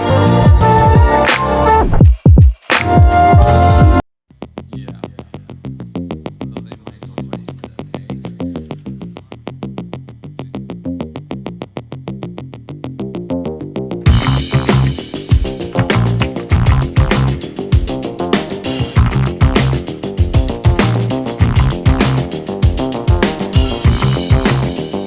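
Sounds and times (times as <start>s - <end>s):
electronic track with ticking beat: 14.1s - 25.0s
loud electronic music: 14.1s - 25.0s
low synth line: 14.1s - 25.0s.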